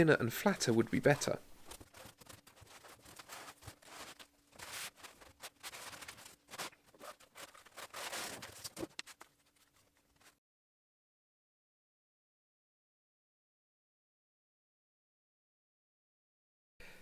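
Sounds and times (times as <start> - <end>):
foam sheets rustling: 0.5 - 10.4.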